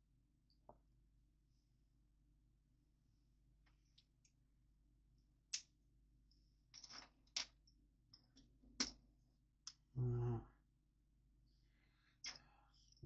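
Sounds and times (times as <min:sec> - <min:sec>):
low voiced hum: 0:10.0 - 0:10.5.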